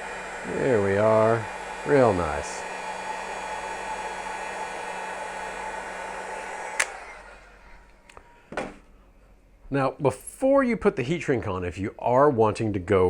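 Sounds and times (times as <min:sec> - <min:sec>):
heat gun blowing with whine: 0:00.0 - 0:08.2
heat gun switch click: 0:06.7 - 0:07.1.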